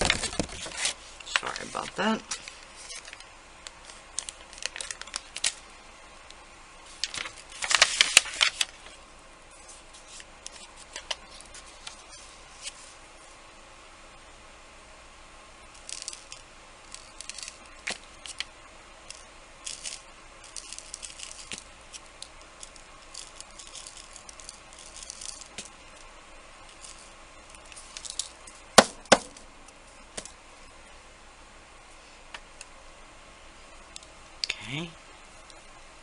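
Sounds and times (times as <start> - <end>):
sharp knocks: 28.8 - 29.4.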